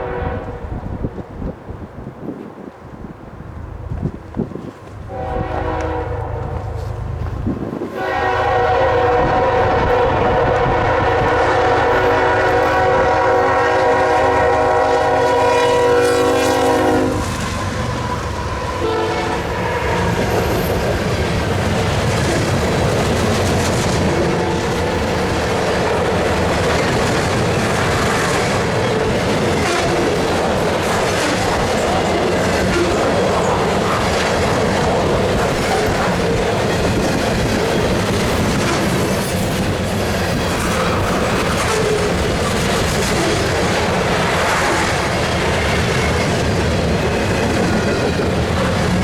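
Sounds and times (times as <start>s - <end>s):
locomotive air horn: 0.0s - 0.6s, 5.1s - 7.0s, 7.9s - 17.4s, 18.7s - 20.4s
train rumbling past: 0.0s - 49.0s
wheels clacking over rail joints: 19.4s - 49.0s.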